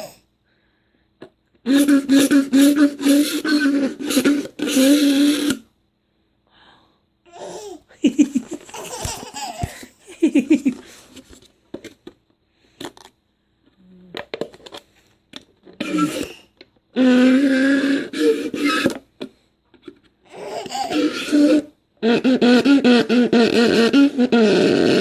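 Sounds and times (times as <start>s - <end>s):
person laughing: 7.4s - 11.0s.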